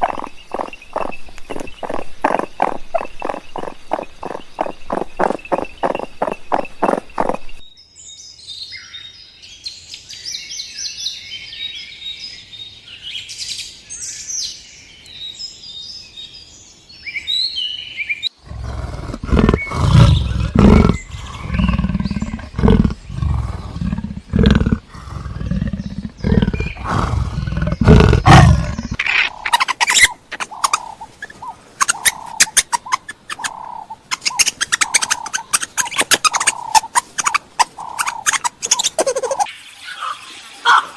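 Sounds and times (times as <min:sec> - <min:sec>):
small birds chirping: 0:00.0 - 0:40.9
big cat roaring and growling: 0:18.4 - 0:29.0.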